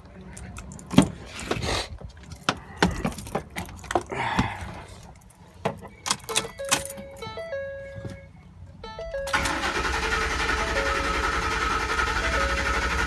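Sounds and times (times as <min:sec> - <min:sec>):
keys jangling: 0:02.2 - 0:04.1, 0:05.0 - 0:07.4.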